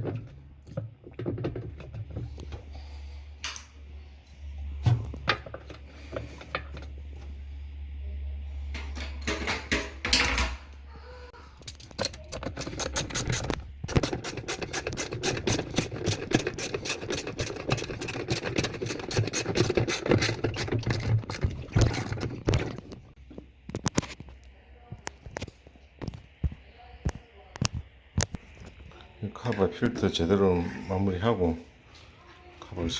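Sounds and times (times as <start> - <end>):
low hum: 0.0 - 13.9
hard plastic parts scratching and clicking: 11.6 - 24.4.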